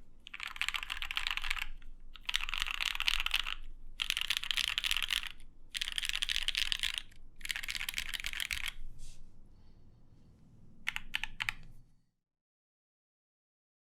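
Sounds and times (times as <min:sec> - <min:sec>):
mechanical keyboard typing: 0:00.2 - 0:08.8, 0:10.9 - 0:11.7.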